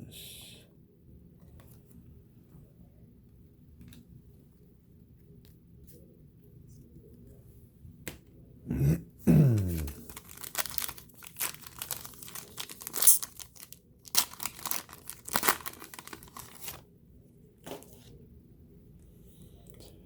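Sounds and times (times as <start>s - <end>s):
foil wrapper tearing and crinkling: 9.6s - 16.8s.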